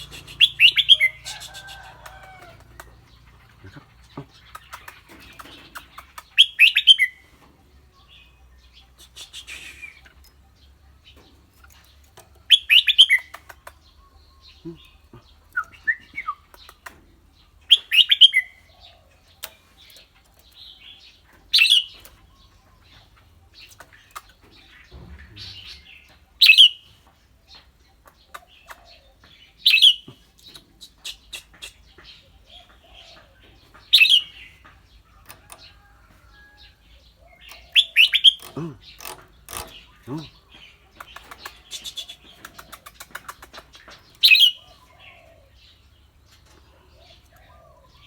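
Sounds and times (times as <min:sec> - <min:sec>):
bird singing clear phrases: 0:00.0 - 0:48.0
faint bird chips: 0:08.9 - 0:10.4, 0:37.3 - 0:44.9.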